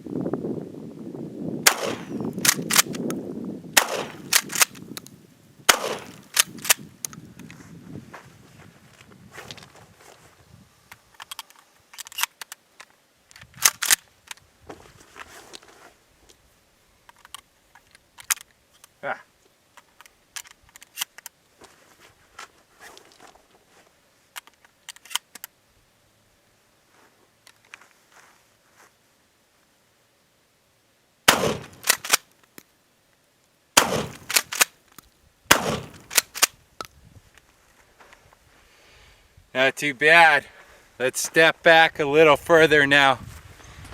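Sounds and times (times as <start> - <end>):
shotgun blasts: 1.6 - 2.9, 3.8 - 4.7, 5.7 - 6.4, 31.3 - 32.1, 33.8 - 34.6, 35.5 - 36.4
shotgun mechanical clicks: 1.7 - 3.2, 3.8 - 5.1, 5.7 - 7.2, 10.9 - 12.6, 13.3 - 14.4, 19.8 - 21.4, 24.3 - 25.6, 31.3 - 32.6, 33.8 - 36.6.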